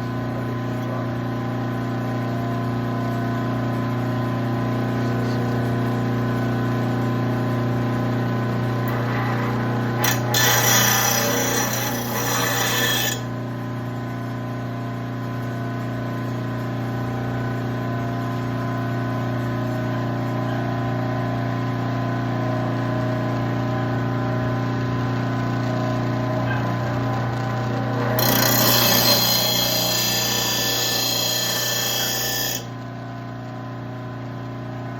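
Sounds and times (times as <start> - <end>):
blade grinding on grinding wheel: 8.8 - 13.3, 27.7 - 32.8
sharpener motor humming: 8.8 - 13.3, 28.0 - 32.7.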